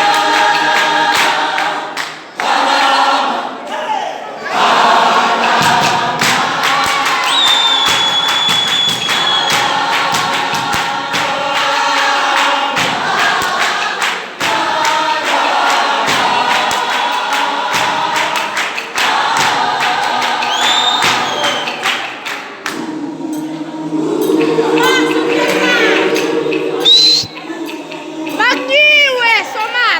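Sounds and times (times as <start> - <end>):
group singing in harmony: 0.0 - 29.9
sharp percussive hits: 5.3 - 28.8
high steady whistle: 7.2 - 9.8, 20.4 - 21.9, 24.2 - 27.4.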